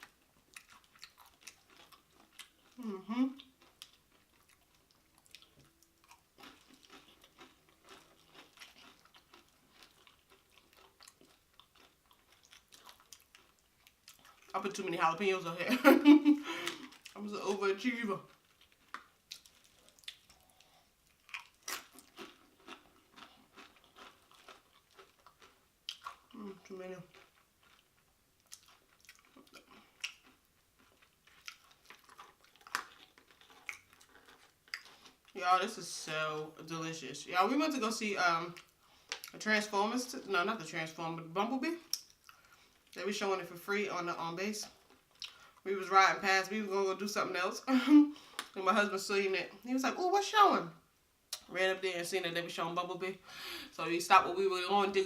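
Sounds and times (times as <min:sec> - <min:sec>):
person chewing crunchy chips: 0:00.0 - 0:14.9, 0:16.5 - 0:17.6, 0:18.2 - 0:35.4, 0:44.7 - 0:45.7.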